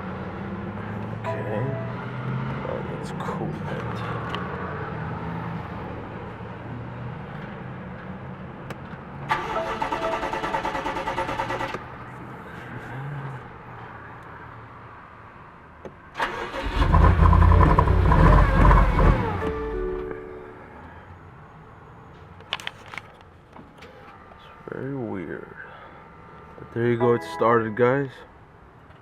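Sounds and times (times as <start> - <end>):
car engine cranking: 9.3 - 11.9, 16.2 - 19.8
car engine starting with rev: 9.3 - 12.0, 16.2 - 20.1.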